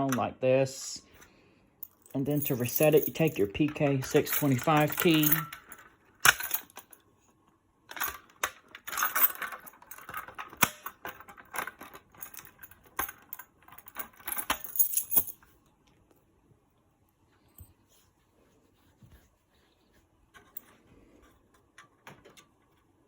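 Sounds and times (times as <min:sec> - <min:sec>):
key jangling and scraping in lock: 0:01.9 - 0:06.9, 0:08.8 - 0:15.4.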